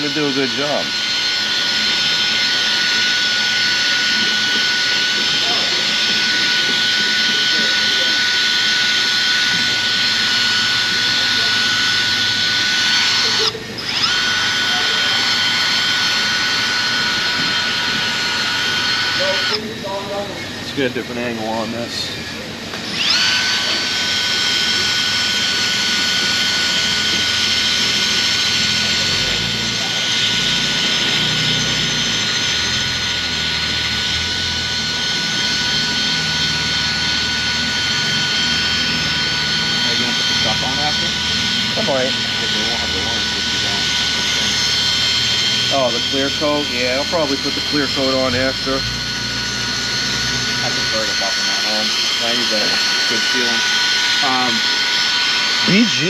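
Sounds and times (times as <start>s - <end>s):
drill whining: 0.0s - 56.0s.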